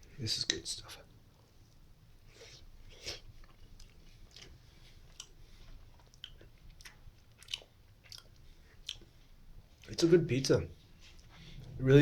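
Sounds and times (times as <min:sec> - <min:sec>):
person chewing pizza: 0:02.3 - 0:10.0.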